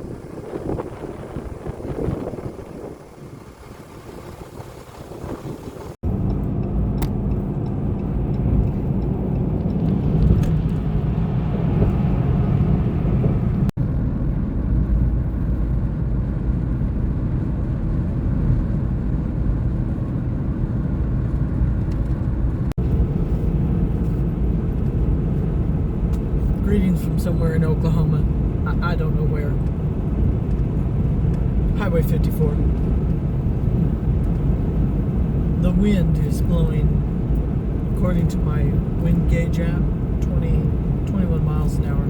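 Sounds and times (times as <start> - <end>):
wind rushing over microphone: 0.0 - 26.7
vehicle road and engine rumble: 0.0 - 42.0.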